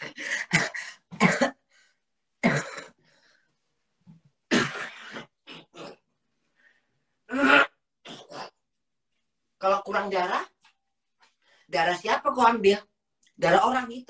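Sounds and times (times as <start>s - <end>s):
woman coughing: 0.4s - 1.7s, 2.4s - 3.0s.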